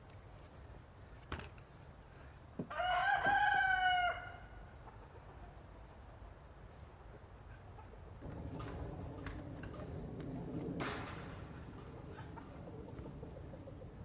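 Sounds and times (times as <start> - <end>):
rooster crowing: 2.7 - 4.6.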